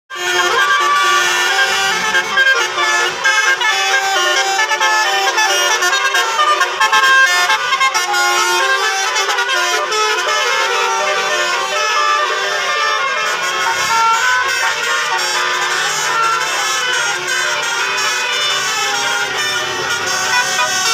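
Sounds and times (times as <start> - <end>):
bus air horn playing melody: 0.1 - 20.9.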